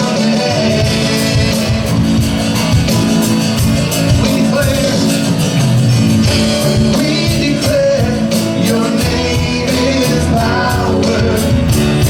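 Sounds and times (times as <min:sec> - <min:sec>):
drum kit beat: 0:00.0 - 0:12.0
rock band playing: 0:00.0 - 0:12.0.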